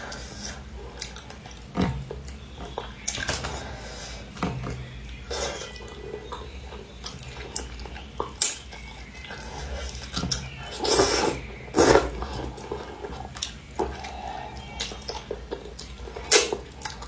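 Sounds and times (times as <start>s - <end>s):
wet chewing and sucking: 5.2s - 17.0s
loud slurps: 10.7s - 12.6s.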